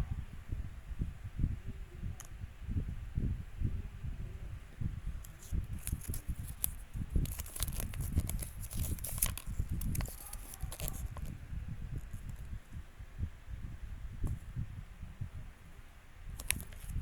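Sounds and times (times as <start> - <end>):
packaging wrapper crinkling: 5.3 - 11.3, 16.4 - 16.9.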